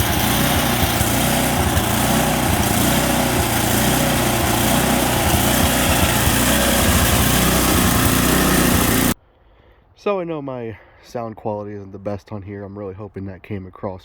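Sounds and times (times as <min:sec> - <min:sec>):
snowblower engine surging: 0:00.0 - 0:09.2.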